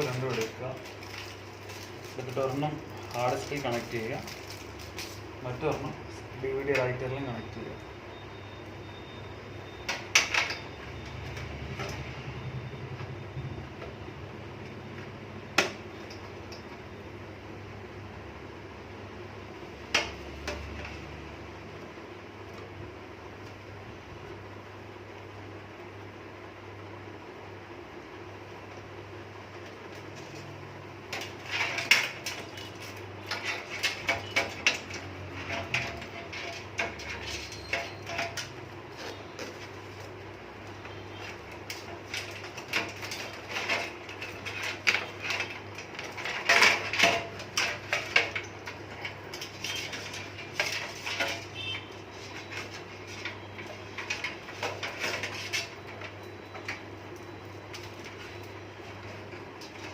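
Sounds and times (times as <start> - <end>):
clicks and clattering of parts: 31.1 - 40.1, 41.2 - 59.9.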